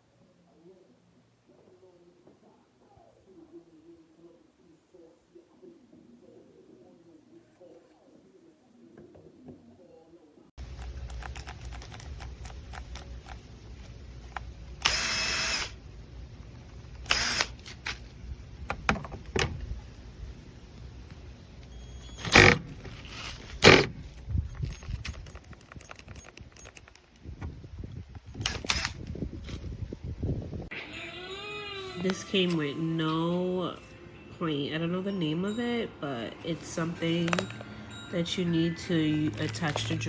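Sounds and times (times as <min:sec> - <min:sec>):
cordless drill running: 0:14.8 - 0:15.8, 0:17.0 - 0:17.7, 0:28.4 - 0:29.0.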